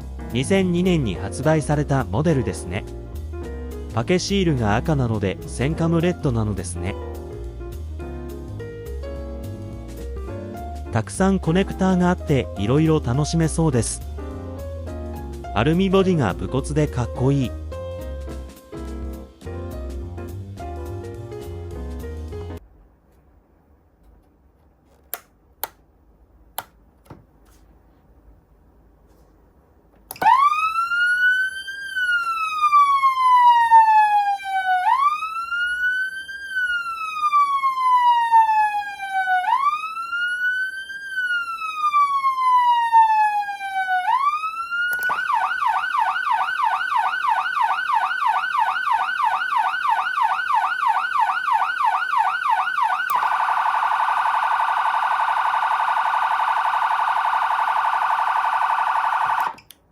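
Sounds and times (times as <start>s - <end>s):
sharp clicks: 25.1s - 25.8s
siren wailing yelping and warbling: 30.2s - 59.6s.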